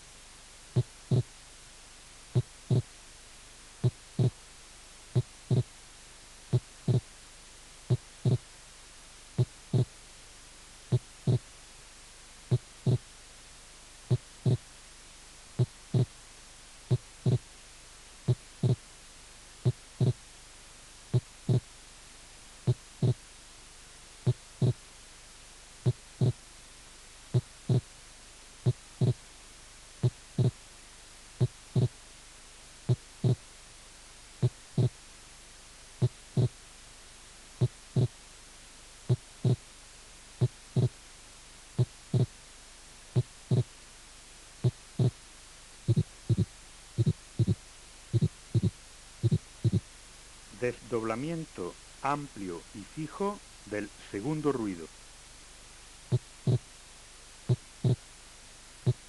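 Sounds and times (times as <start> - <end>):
steady hiss: 0.0 - 59.0
heartbeat low thuds: 0.7 - 1.3, 2.3 - 3.0, 3.8 - 4.4, 5.1 - 5.8, 6.5 - 7.1, 7.8 - 8.5, 9.3 - 10.0, 10.9 - 11.5, 12.5 - 13.1, 14.0 - 14.6, 15.6 - 16.2, 16.9 - 17.5, 18.2 - 18.9, 19.6 - 20.2, 21.1 - 21.7, 22.6 - 23.3, 24.2 - 24.8, 25.8 - 26.5, 27.3 - 27.9, 28.6 - 29.3, 30.0 - 30.6, 31.4 - 32.0, 32.8 - 33.5, 34.4 - 35.0, 36.0 - 36.6, 37.6 - 38.2, 39.0 - 39.7, 40.4 - 41.0, 41.7 - 42.4, 43.1 - 43.8, 44.6 - 45.2, 45.8 - 49.9, 56.1 - 56.7, 57.4 - 58.0, 58.8 - 59.0.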